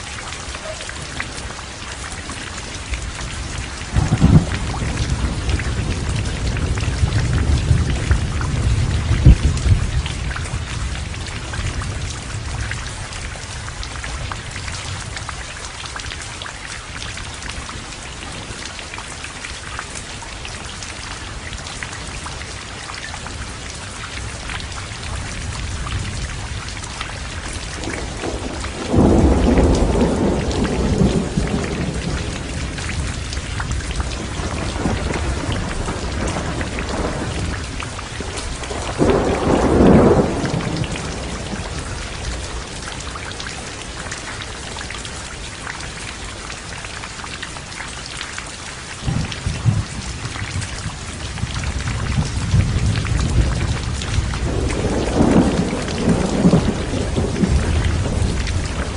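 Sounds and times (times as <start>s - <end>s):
thunder rumbling: 0.0s - 13.6s, 24.3s - 44.8s, 49.0s - 58.9s
heavy rain falling: 0.0s - 58.9s.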